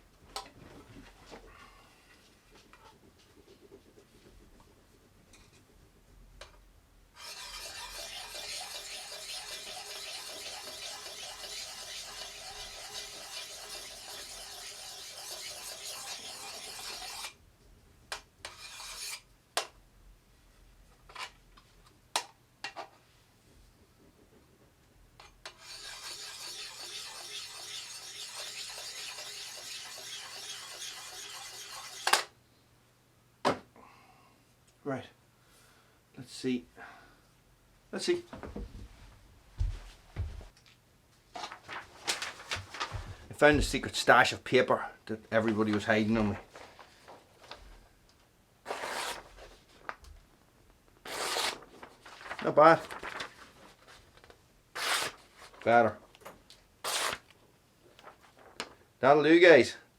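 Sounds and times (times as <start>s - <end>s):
sharpening stone scraping axe: 7.2s - 17.3s, 18.5s - 19.2s, 25.6s - 32.3s.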